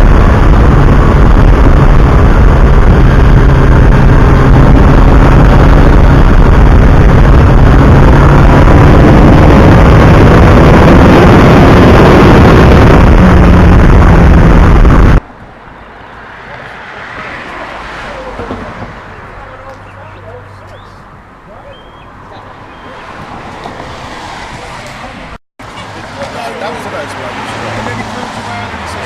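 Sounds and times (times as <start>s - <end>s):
motorcycle engine running: 0.0s - 15.2s
wind rush: 0.0s - 15.6s, 22.1s - 25.4s.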